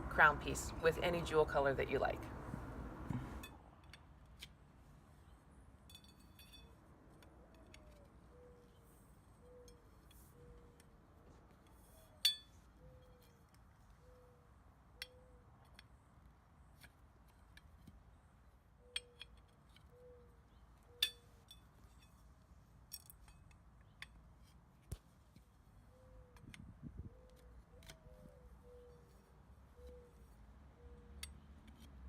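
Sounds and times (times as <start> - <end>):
metal poles clinking: 5.8 - 6.8, 12.2 - 12.6.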